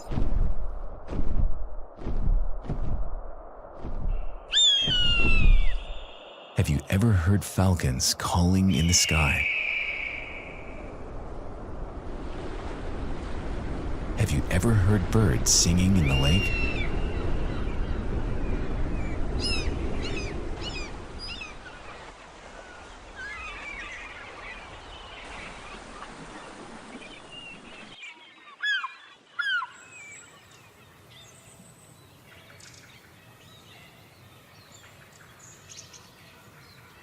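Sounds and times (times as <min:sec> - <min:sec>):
water birds calling: 0:04.1 - 0:11.3, 0:12.5 - 0:37.0
birds chattering: 0:14.6 - 0:17.6.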